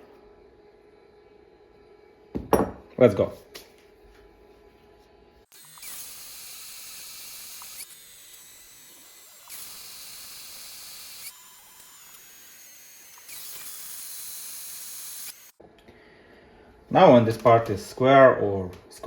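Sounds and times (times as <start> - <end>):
milling machine cutting metal: 5.5 - 15.6.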